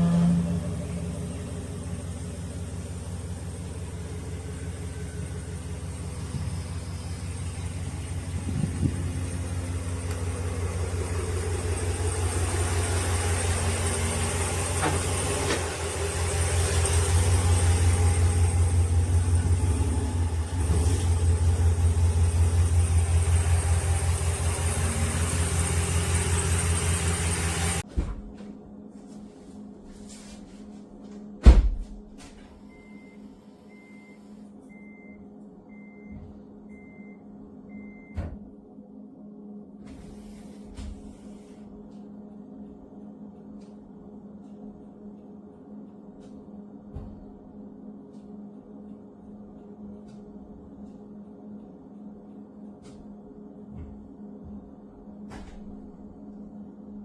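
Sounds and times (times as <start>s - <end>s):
vehicle engine idling: 0.0s - 28.3s.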